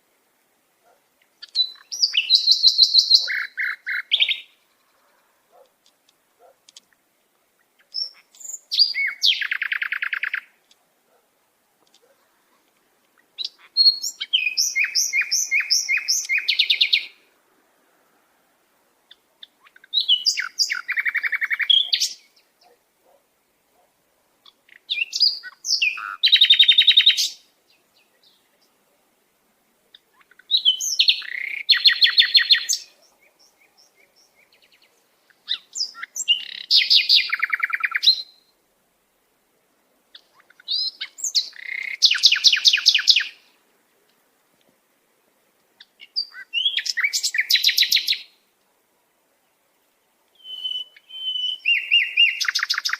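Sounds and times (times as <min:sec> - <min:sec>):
sparrow chirping: 0:01.4 - 0:05.6, 0:07.8 - 0:10.6, 0:13.2 - 0:17.2, 0:19.1 - 0:22.8, 0:24.4 - 0:28.7, 0:29.9 - 0:38.4, 0:40.1 - 0:43.4, 0:45.8 - 0:48.4, 0:50.4 - 0:52.9.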